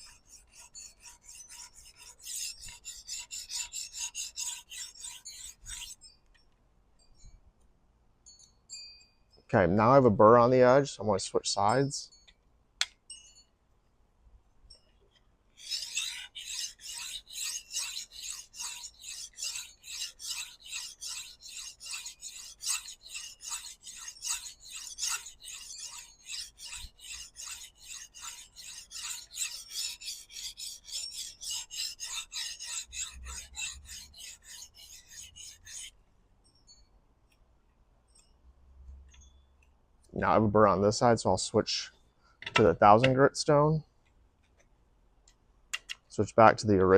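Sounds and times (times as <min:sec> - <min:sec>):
sharpening stone scraping knife: 0:00.0 - 0:06.2, 0:15.6 - 0:36.0.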